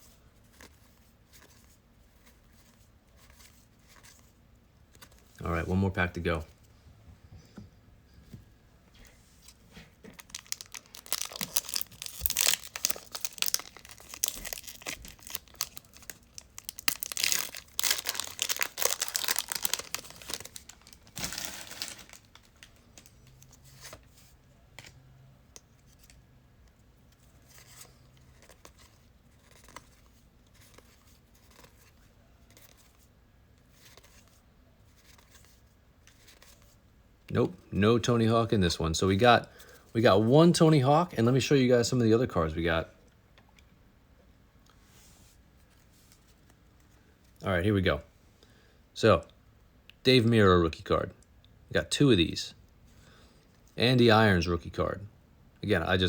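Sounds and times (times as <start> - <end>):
wrapper tearing and crinkling: 10.2 - 23.4.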